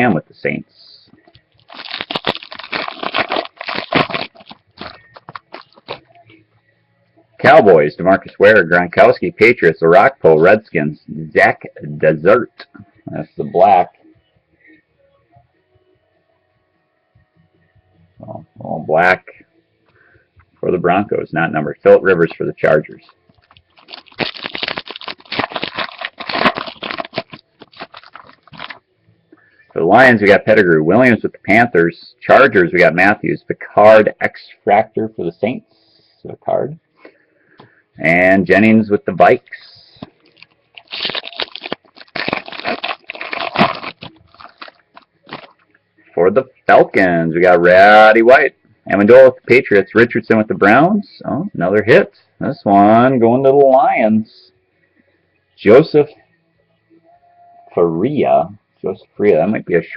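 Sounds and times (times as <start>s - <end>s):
foil wrapper crinkling: 1.5s - 6.2s, 23.3s - 28.8s, 40.0s - 45.6s.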